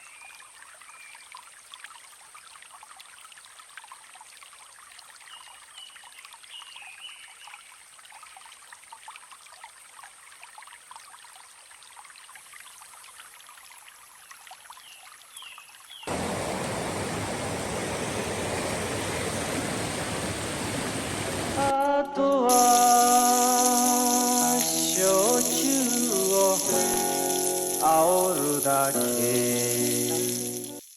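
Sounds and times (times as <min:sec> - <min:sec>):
stream water trickling: 0:00.0 - 0:21.8, 0:22.4 - 0:30.9
fast-flowing water rushing: 0:16.1 - 0:21.7, 0:22.5 - 0:30.9.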